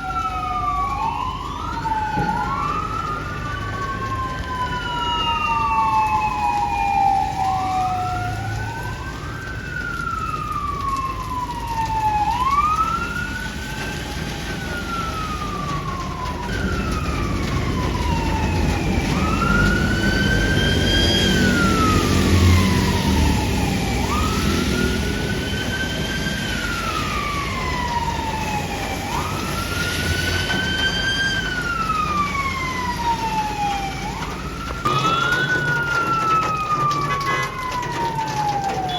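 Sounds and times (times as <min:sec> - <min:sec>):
emergency vehicle sirens wailing: 0:00.0 - 0:38.9
heavy vehicle engine rumble: 0:12.5 - 0:38.9.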